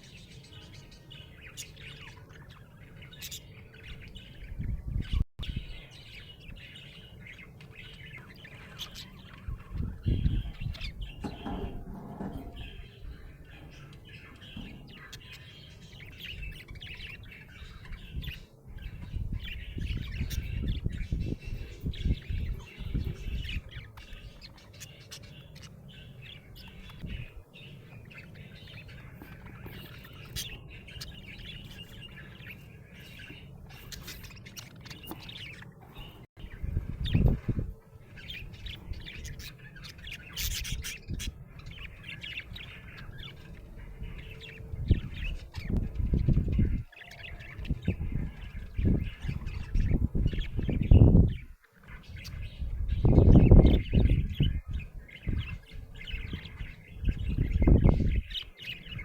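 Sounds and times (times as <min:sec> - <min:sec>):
low rumbling bumps: 0:09.7 - 0:15.3.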